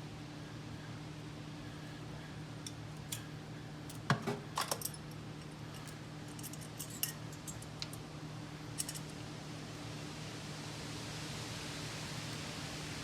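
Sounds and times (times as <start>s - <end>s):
metal tools clinking: 4.6s - 8.0s, 8.8s - 9.1s.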